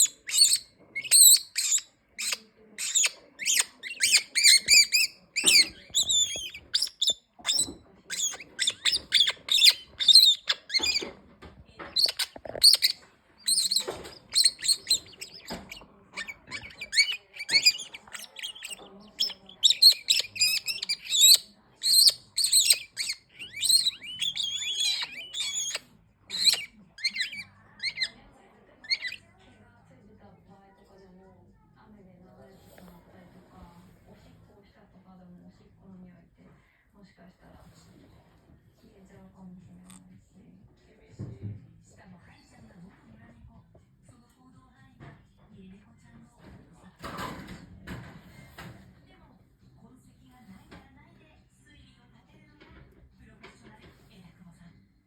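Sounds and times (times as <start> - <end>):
parrot squawking: 0.0 - 11.1, 11.8 - 28.2, 28.8 - 29.2.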